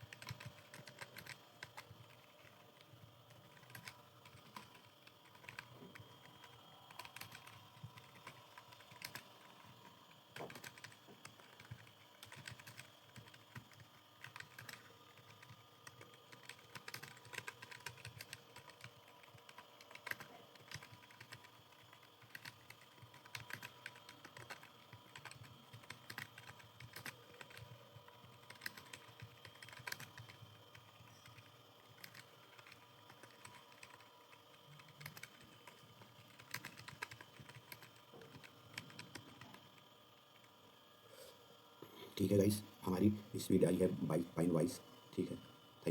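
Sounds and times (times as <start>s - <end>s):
keyboard typing: 0.0s - 40.5s.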